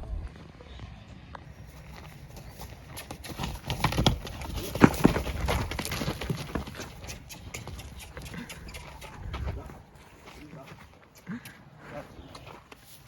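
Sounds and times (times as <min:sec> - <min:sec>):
cattle hooves knocking on ground: 0:01.6 - 0:10.4.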